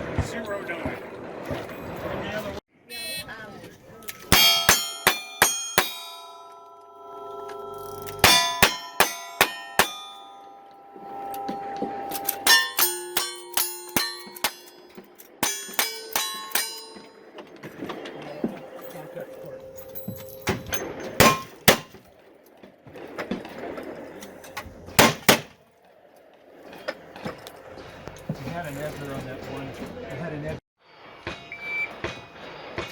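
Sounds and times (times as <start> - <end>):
bullets clanging on steel target: 4.1 - 10.7, 11.3 - 17.9, 19.8 - 22.0.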